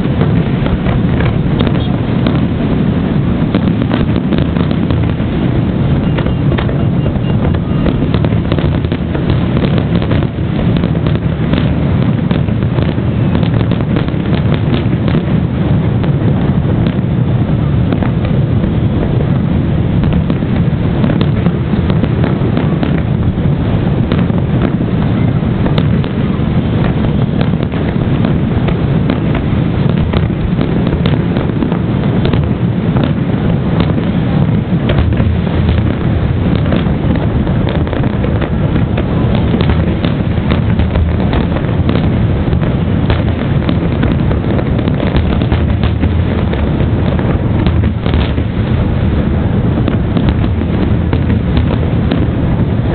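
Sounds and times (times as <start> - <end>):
fireworks bangs and crackles: 0.0 - 52.9
heavy rumble: 0.0 - 52.9.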